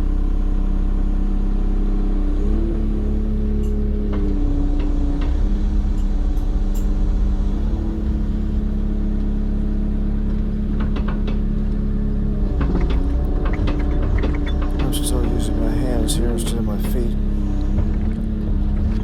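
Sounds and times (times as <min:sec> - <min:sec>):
excavator engine idling: 0:07.8 - 0:17.4.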